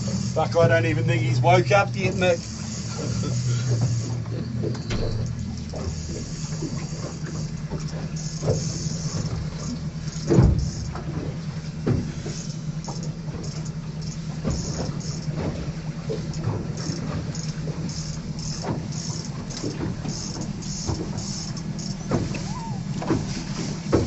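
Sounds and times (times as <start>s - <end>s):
motor humming: 0.0s - 24.0s.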